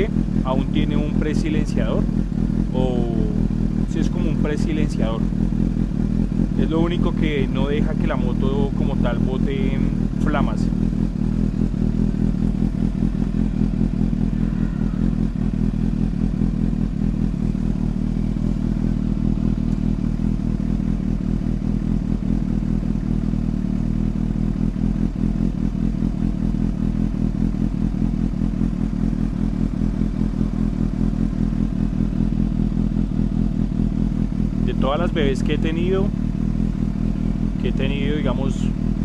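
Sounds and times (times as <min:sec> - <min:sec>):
motorcycle engine idling: 0:00.0 - 0:39.0.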